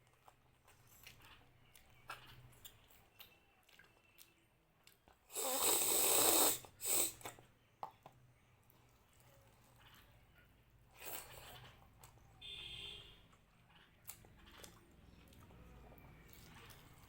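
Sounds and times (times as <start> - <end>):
soft chewing clicks: 0.0 - 5.3, 10.9 - 12.3, 13.3 - 17.0
noisy intake of air: 5.3 - 7.2.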